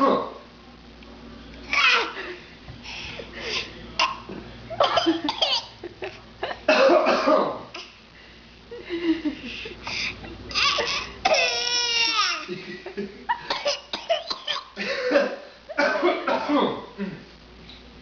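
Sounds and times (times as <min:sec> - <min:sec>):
baby fake-coughing: 0:04.0 - 0:05.8, 0:10.5 - 0:12.5, 0:13.5 - 0:14.8.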